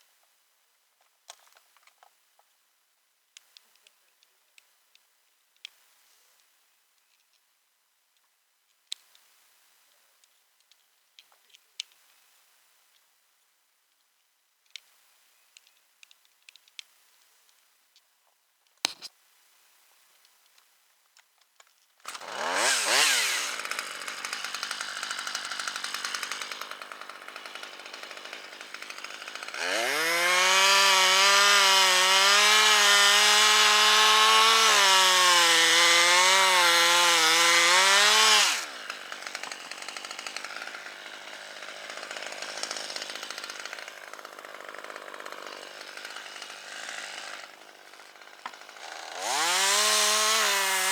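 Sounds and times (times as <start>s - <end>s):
chainsaw starting and revving: 22.0s - 50.9s.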